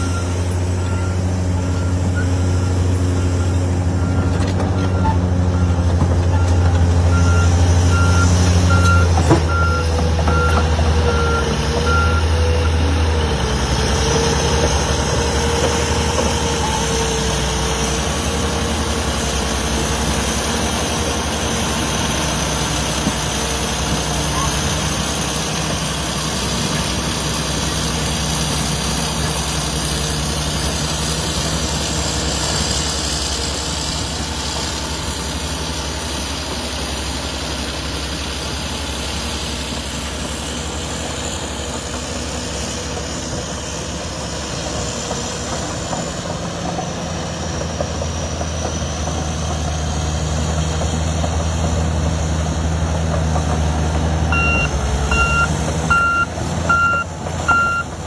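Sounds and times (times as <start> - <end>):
reversing alarm beeping: 0.0 - 12.9, 54.3 - 58.0
diesel engine running: 0.0 - 58.0.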